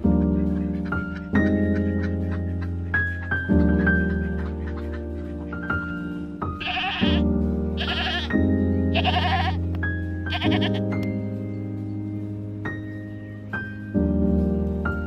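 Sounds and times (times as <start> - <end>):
background music with mallet notes: 0.0 - 15.0
animal bleating: 6.5 - 11.0.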